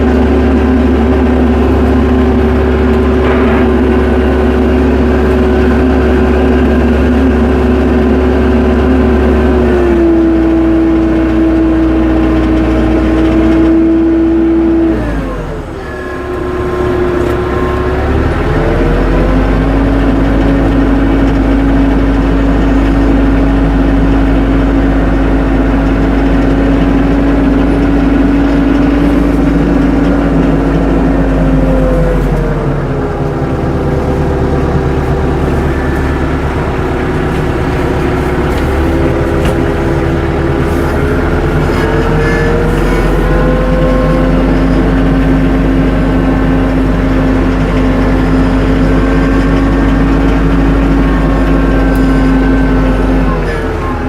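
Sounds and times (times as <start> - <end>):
tractor engine running: 0.0 - 54.0.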